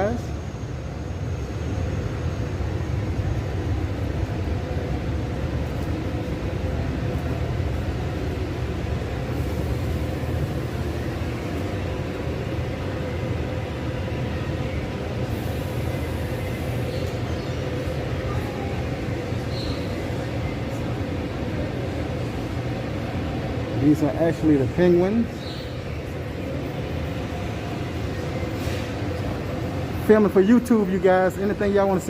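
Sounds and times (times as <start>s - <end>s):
steady low rumble: 0.0s - 24.8s
faint constant hum: 0.0s - 32.0s.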